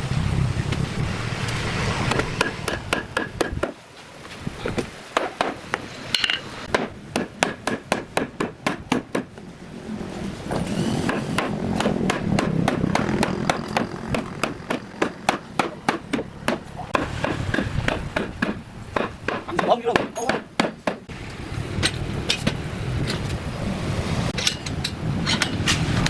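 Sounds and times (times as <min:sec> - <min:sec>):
steady rushing noise: 0:00.0 - 0:26.0
rapid hammer blows: 0:01.4 - 0:03.8, 0:10.6 - 0:22.7.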